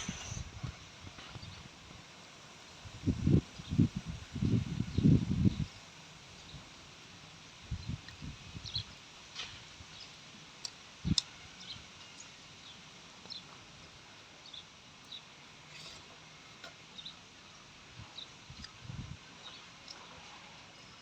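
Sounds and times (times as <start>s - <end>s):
mouth clicks and chewing: 10.6s - 11.3s, 18.5s - 18.9s, 19.8s - 20.1s.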